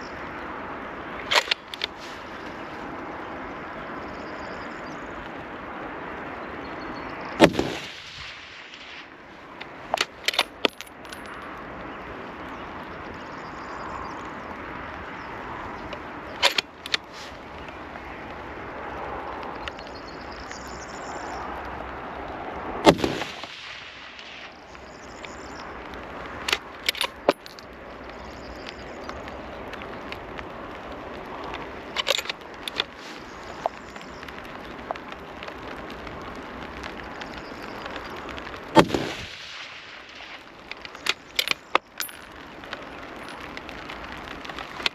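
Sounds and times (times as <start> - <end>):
background hiss: 0.0 - 44.9
sharp clicks: 1.3 - 2.0, 15.8 - 17.8, 22.9 - 30.4, 31.2 - 44.9
rifle shots: 7.4 - 9.1, 22.9 - 24.4, 38.8 - 40.2.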